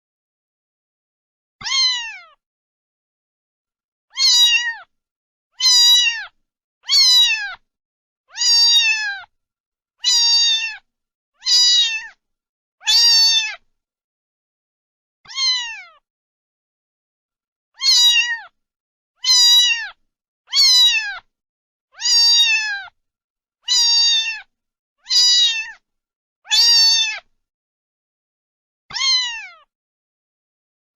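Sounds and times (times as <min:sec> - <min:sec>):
cat meowing: 0:01.6 - 0:02.4, 0:04.1 - 0:04.9, 0:05.6 - 0:07.6, 0:08.3 - 0:09.3, 0:10.0 - 0:12.2, 0:12.8 - 0:13.6, 0:15.3 - 0:16.0, 0:17.8 - 0:18.6, 0:19.2 - 0:21.3, 0:22.0 - 0:23.0, 0:23.6 - 0:25.8, 0:26.5 - 0:27.3, 0:28.9 - 0:29.7.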